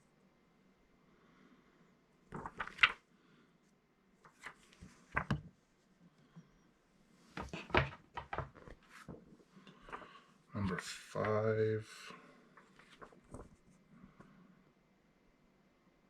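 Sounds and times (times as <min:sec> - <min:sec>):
comic books being handled: 0:02.3 - 0:03.0, 0:04.3 - 0:05.6, 0:07.3 - 0:10.0.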